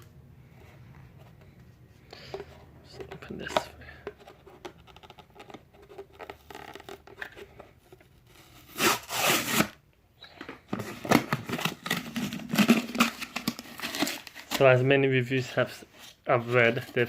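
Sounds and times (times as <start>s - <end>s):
plastic tub handling: 1.0s - 8.2s, 10.2s - 14.8s
seal tearing: 8.3s - 9.8s, 11.0s - 14.7s.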